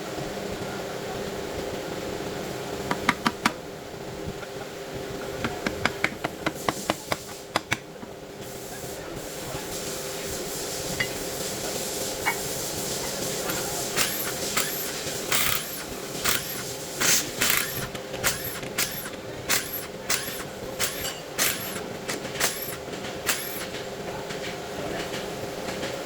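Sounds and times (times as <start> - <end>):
steady hum: 0.0 - 26.0
tools striking metal: 13.5 - 23.8.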